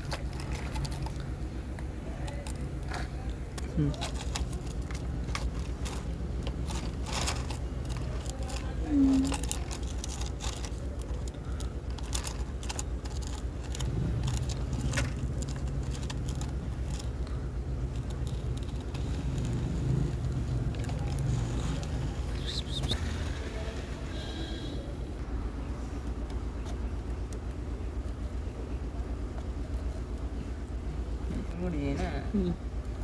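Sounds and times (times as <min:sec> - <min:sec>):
parts clicking and scraping: 0:00.0 - 0:25.2.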